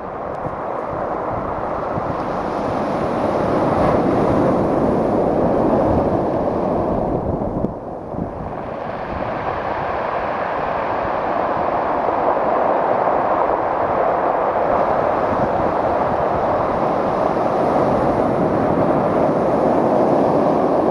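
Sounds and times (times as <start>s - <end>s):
surf breaking on beach: 8.1s - 20.9s.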